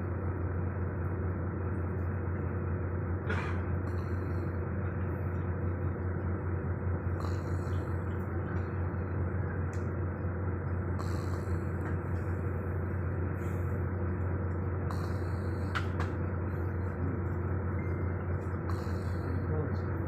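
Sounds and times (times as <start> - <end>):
steady low drone: 0.0 - 20.0
soft snoring breaths: 7.0 - 8.9, 11.0 - 13.8, 14.8 - 17.4, 18.4 - 19.8.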